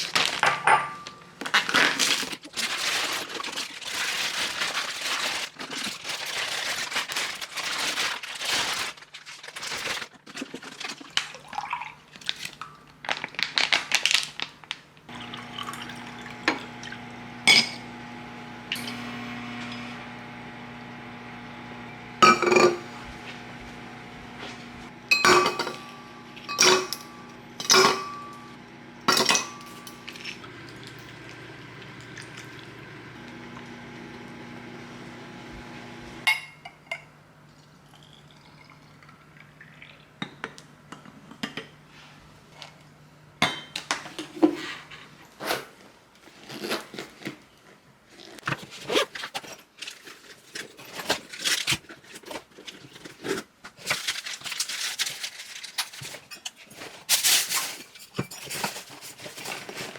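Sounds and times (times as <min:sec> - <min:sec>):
dishes and cutlery clinking: 0:00.4 - 0:01.2, 0:25.1 - 0:28.4, 0:29.1 - 0:30.4
appliance hum: 0:15.1 - 0:40.1.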